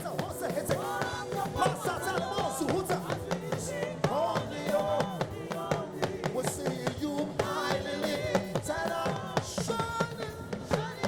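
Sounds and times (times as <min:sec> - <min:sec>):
live band playing praise music: 0:00.0 - 0:11.0
person singing: 0:00.0 - 0:11.0
rapid drumming: 0:00.0 - 0:11.0.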